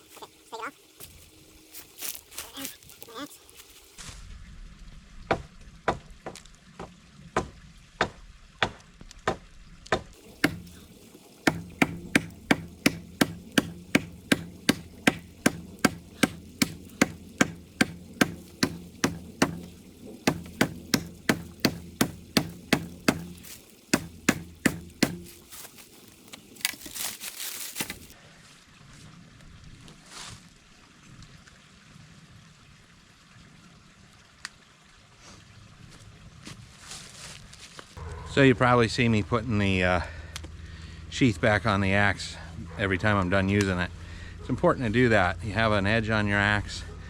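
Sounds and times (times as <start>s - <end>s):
axe chopping into log: 10.2s - 28.2s.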